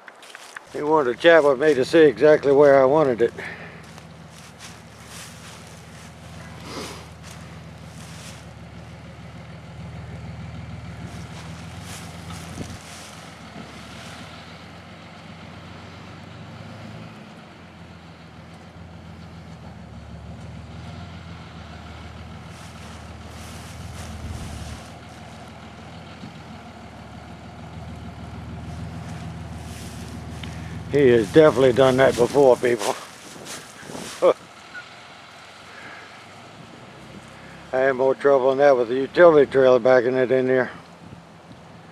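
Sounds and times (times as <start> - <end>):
vehicle engine idling low: 0.3 - 41.9.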